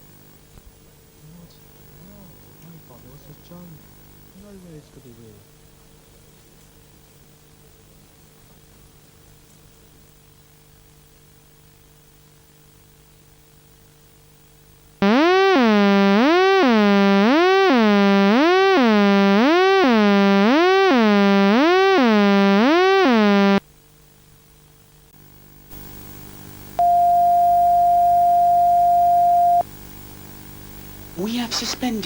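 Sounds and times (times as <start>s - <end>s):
static hiss: 14.7s - 23.6s, 25.1s - 32.0s
buzzy wailing siren: 15.0s - 23.6s
steady alert tone: 15.0s - 23.6s.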